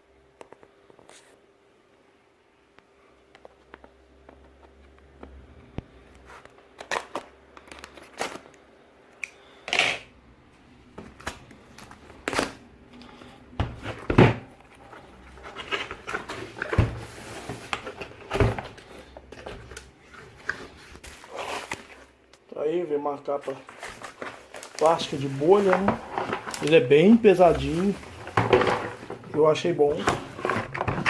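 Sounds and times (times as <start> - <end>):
packaging rustling: 6.3 - 8.6, 11.0 - 22.2, 23.4 - 31.0
rustling sliding sound: 14.7 - 22.2, 23.5 - 31.0.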